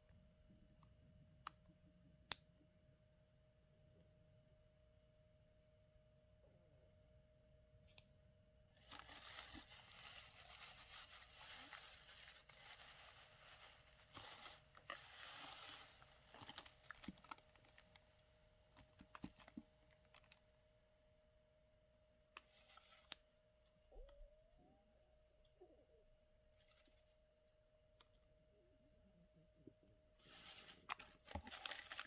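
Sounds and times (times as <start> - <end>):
packaging rustling and tearing: 8.8 - 18.2, 30.2 - 32.0.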